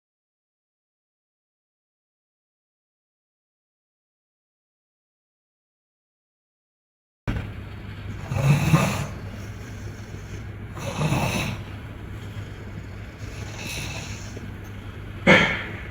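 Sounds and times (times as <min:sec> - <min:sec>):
steady low hum: 0:07.3 - 0:15.9
person snoring loudly: 0:08.1 - 0:15.9.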